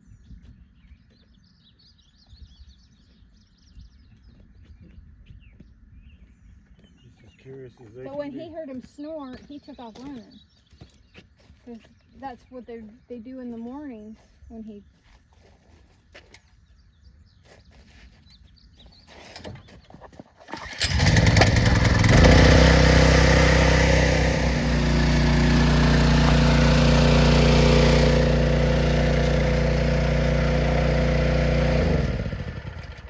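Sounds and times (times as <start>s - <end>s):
small gasoline engine running: 20.5s - 33.0s.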